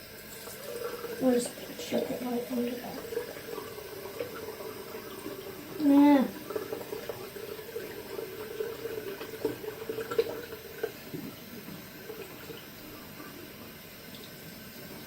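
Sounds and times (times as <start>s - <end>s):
tap water running into sink: 0.0s - 15.0s.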